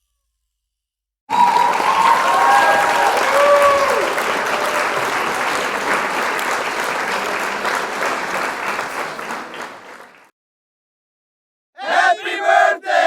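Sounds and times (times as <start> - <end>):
crowd applauding: 1.3 - 10.3.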